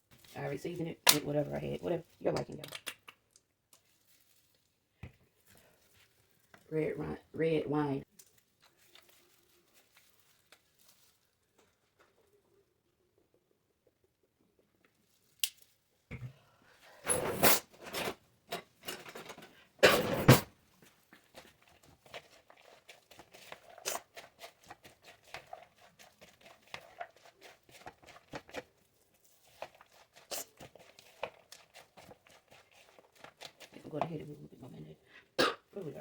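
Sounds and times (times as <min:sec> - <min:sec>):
packaging crinkling and tearing: 0:03.8 - 0:04.8, 0:08.1 - 0:11.8.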